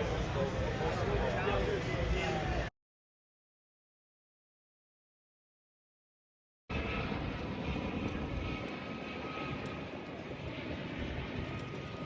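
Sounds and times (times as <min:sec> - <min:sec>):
airplane engine droning: 0:00.0 - 0:02.7, 0:06.7 - 0:12.0
outdoor noise: 0:00.0 - 0:02.7, 0:06.7 - 0:12.0.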